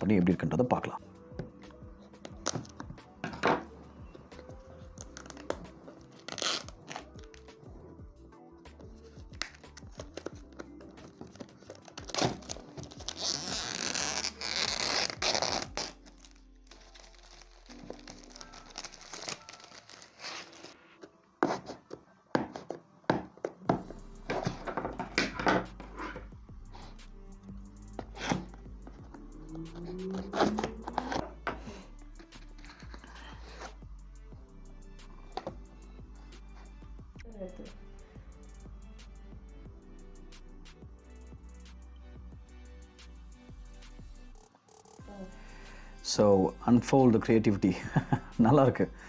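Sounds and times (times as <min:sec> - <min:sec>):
soft background music: 0:00.0 - 0:49.0
plastic wrap crinkling and tearing: 0:05.0 - 0:07.4, 0:11.3 - 0:20.8
packaging taps and clicks: 0:09.2 - 0:13.1
packaging rustles: 0:09.4 - 0:21.2.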